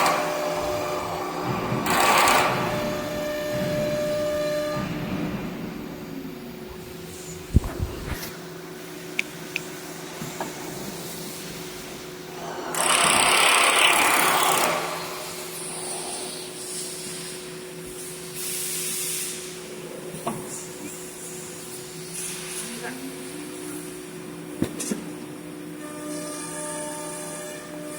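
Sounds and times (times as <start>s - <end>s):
cnc machine humming: 0.0s - 9.2s.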